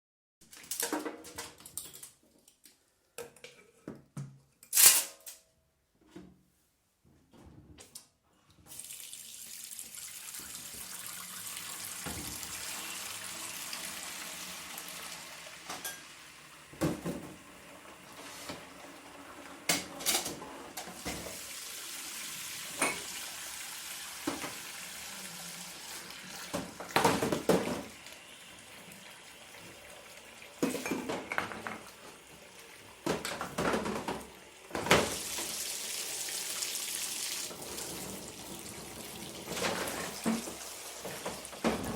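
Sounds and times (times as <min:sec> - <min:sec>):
tap running: 0:11.9 - 0:12.8
dishes and cutlery clinking: 0:15.7 - 0:16.1, 0:22.8 - 0:23.2, 0:30.6 - 0:31.8.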